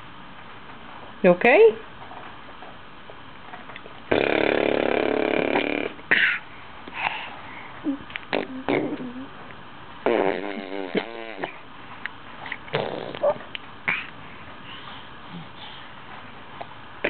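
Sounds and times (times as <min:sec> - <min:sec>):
raspberry blown with lips: 0:04.1 - 0:06.4, 0:07.9 - 0:09.3, 0:10.0 - 0:11.6, 0:12.6 - 0:14.1.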